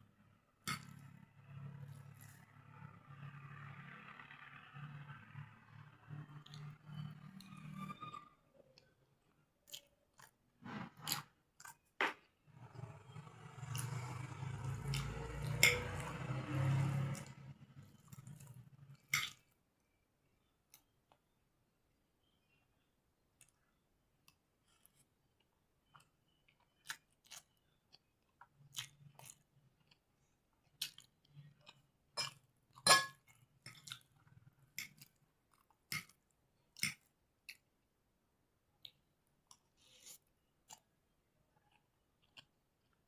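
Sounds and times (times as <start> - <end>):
chewing noodles: 24.3 - 32.4.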